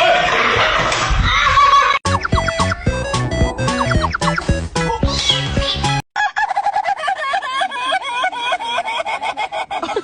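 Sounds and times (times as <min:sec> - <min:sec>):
background music: 0:02.1 - 0:06.0.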